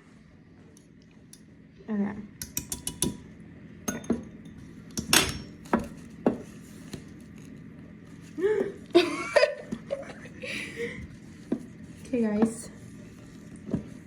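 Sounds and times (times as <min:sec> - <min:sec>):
utensil knocking against mixing bowl: 0:02.4 - 0:03.2.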